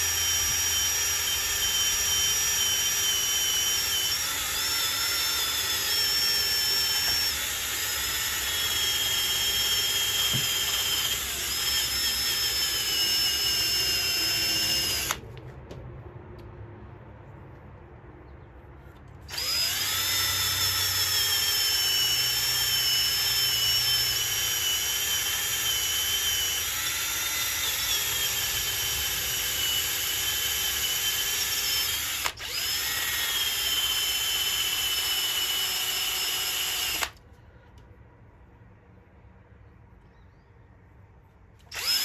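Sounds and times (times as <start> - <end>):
rotary tool whining sanding metal: 0.0 - 15.2, 19.3 - 37.2.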